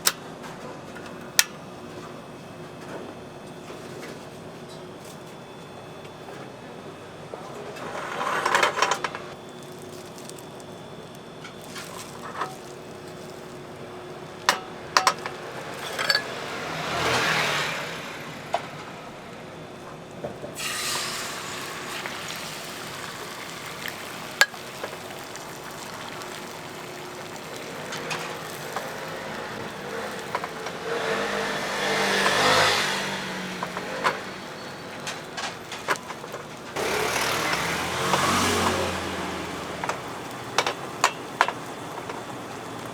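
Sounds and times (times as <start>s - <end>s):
traffic passing: 7.6s - 42.9s
egg sizzling on a griddle: 9.3s - 17.7s, 20.6s - 42.9s
utensils clicking and knocking: 11.4s - 17.1s, 23.8s - 42.3s.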